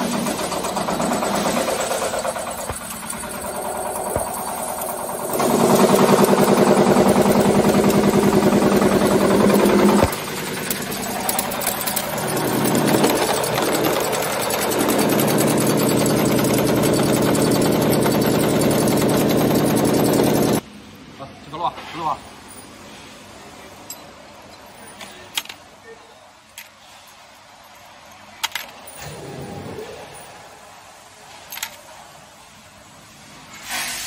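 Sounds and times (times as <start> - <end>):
nail machine clattering: 0.0 - 20.6.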